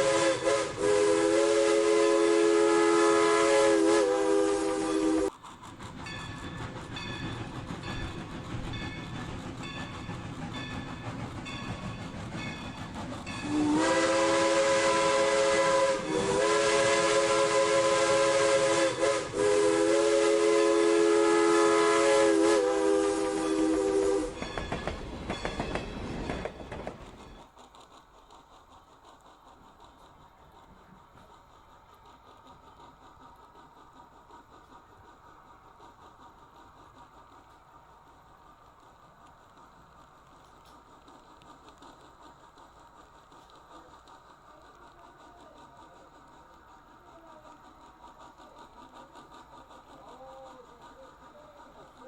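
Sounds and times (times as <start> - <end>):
steam whistle blasts: 0.0 - 5.3, 13.4 - 24.4
steam locomotive running: 0.0 - 52.0.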